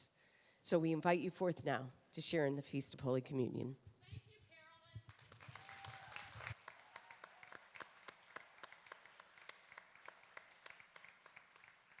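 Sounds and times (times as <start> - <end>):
faint hand clapping: 5.0 - 12.0.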